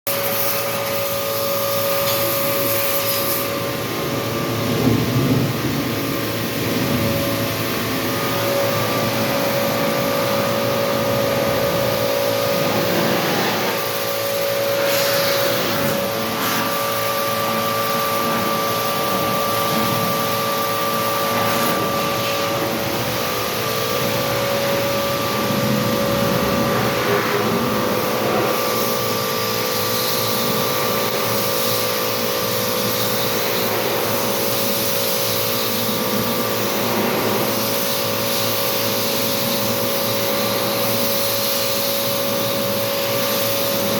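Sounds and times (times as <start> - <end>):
water spray hissing: 0.1 - 3.5, 8.2 - 24.8
pressure washer motor hum: 0.1 - 43.9.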